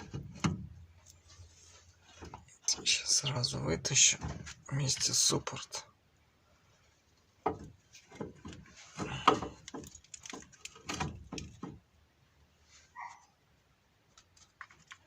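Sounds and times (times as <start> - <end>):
brake caliper metal clunks and scrapes: 0.0 - 3.2.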